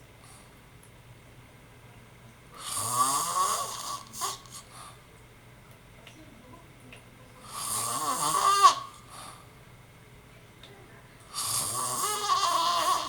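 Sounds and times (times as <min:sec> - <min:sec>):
snoring: 0:02.6 - 0:04.7, 0:07.5 - 0:09.0, 0:11.3 - 0:13.0.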